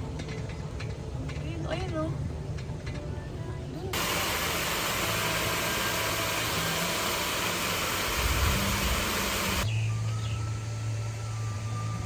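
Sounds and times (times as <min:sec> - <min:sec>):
steady rushing hiss: 0:03.9 - 0:12.0.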